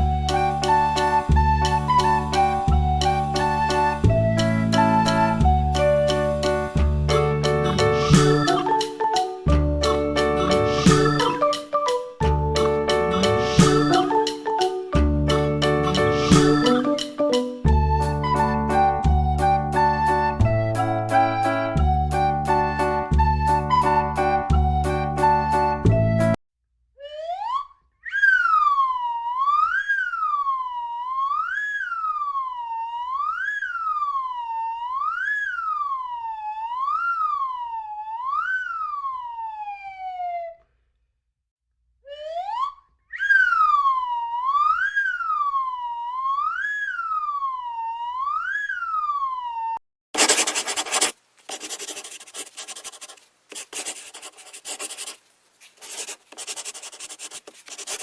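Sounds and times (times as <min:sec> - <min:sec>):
wailing siren: 0:00.0 - 0:06.4, 0:10.4 - 0:12.0, 0:13.1 - 0:15.0, 0:15.7 - 0:17.0, 0:17.7 - 0:26.2, 0:27.0 - 0:40.7, 0:42.1 - 0:49.8
drawing tool scratching on paper: 0:50.2 - 0:58.0.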